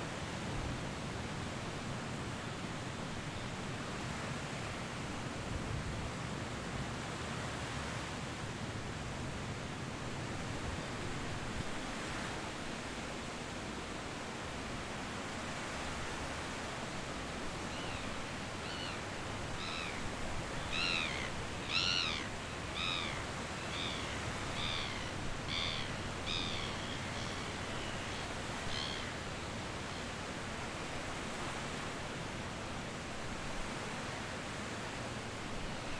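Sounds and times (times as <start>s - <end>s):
bird squealing calls: 20.6s - 28.0s.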